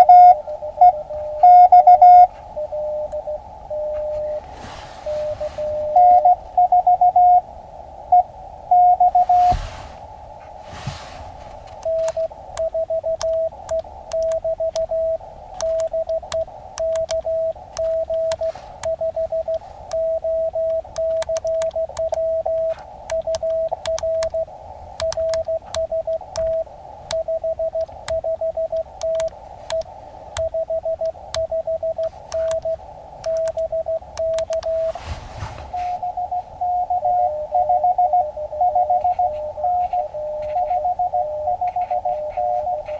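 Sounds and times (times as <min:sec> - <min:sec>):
morse code tones: 0:00.0 - 0:07.5, 0:08.1 - 0:09.6, 0:11.8 - 0:42.9
radio hiss: 0:03.2 - 0:06.5, 0:07.4 - 0:42.9
sharp keying clicks: 0:11.7 - 0:14.9, 0:15.5 - 0:34.7.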